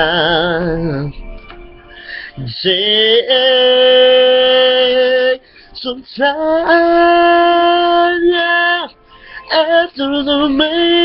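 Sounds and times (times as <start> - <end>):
person singing long notes: 2.3 - 11.0.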